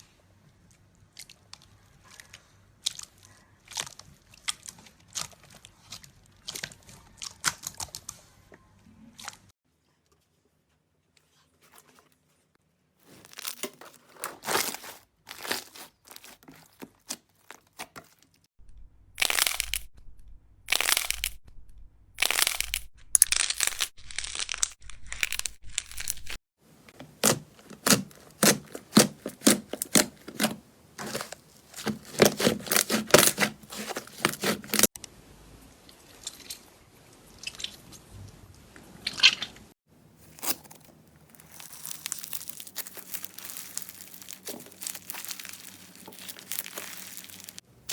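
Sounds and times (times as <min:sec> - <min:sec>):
slime crackling and popping: 0:19.2 - 0:19.9, 0:20.7 - 0:21.4, 0:22.2 - 0:26.4, 0:27.2 - 0:34.9, 0:40.3 - 0:47.9.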